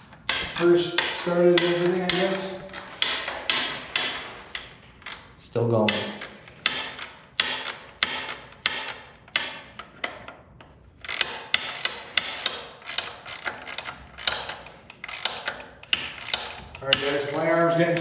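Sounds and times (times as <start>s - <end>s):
metal hand tool clicking: 0.2s - 5.2s, 11.1s - 18.0s.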